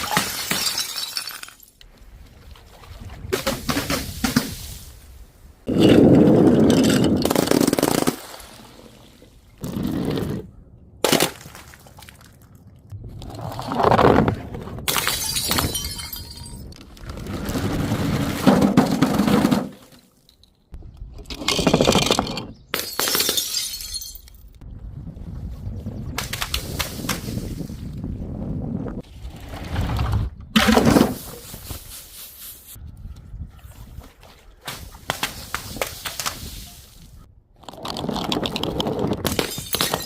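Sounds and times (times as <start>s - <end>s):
glass bottles shattering: 0.0s - 1.8s, 14.9s - 16.8s, 21.5s - 24.5s, 39.3s - 40.0s
tinkling of glass pieces: 15.2s - 16.7s, 22.8s - 24.4s.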